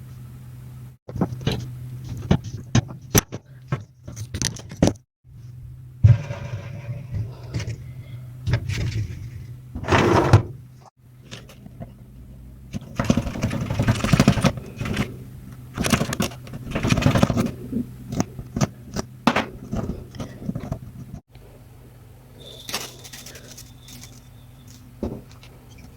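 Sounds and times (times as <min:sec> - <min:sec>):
steady low hum: 0:00.0 - 0:25.9
scraping or rubbing: 0:08.6 - 0:10.6
handling clicks and knocks: 0:12.7 - 0:17.5.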